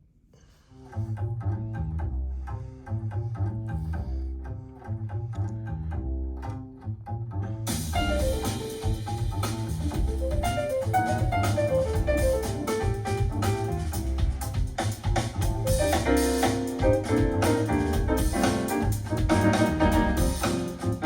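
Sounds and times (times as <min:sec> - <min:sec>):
bass line: 0:01.0 - 0:21.0
jazz over speakers: 0:07.4 - 0:21.0
drums and cymbals: 0:07.7 - 0:21.0.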